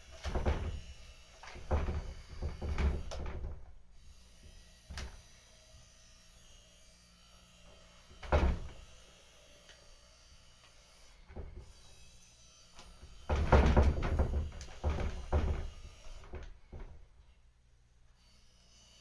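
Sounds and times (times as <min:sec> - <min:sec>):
thumps against paper screen: 0:00.2 - 0:00.8, 0:01.4 - 0:03.6, 0:13.3 - 0:17.0.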